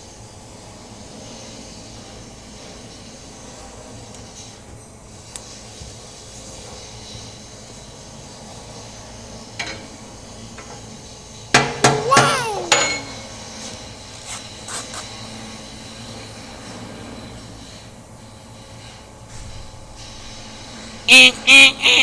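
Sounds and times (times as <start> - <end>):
sharp metallic knocks with ringing: 11.6 - 13.4.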